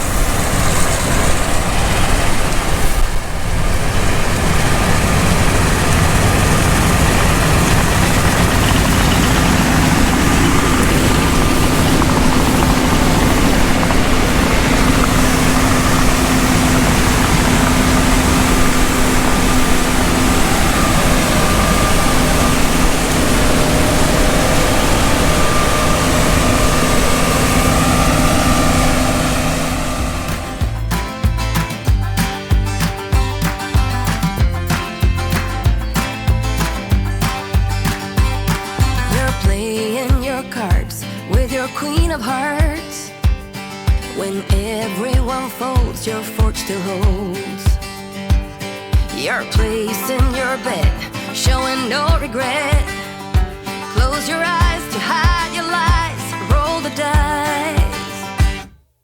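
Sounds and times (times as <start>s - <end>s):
combine harvester drone: 0.0s - 39.6s.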